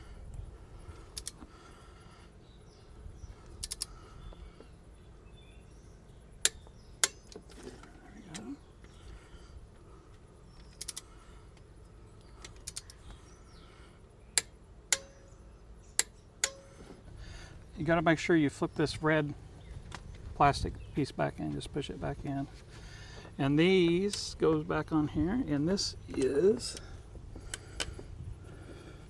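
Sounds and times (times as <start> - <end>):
ratchet ticking: 1.1 - 1.4, 3.6 - 4.0, 10.7 - 11.1, 12.5 - 13.0, 14.4 - 15.3, 16.0 - 16.7
torque wrench clicks: 1.1 - 1.4, 3.5 - 4.0, 6.4 - 7.4, 10.6 - 11.1, 12.4 - 13.1, 14.4 - 15.2, 16.0 - 16.6.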